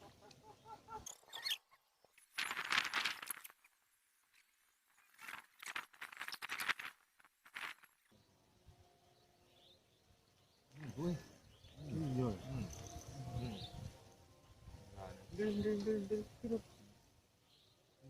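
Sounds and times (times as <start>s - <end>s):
rustling and scraping: 2.1s - 8.0s.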